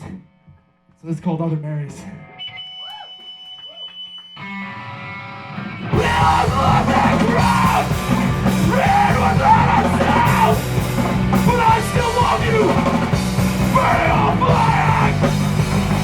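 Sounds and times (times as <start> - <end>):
distorted guitars: 1.8 - 16.0
sustained guitar: 3.5 - 16.0
drums: 5.5 - 16.0.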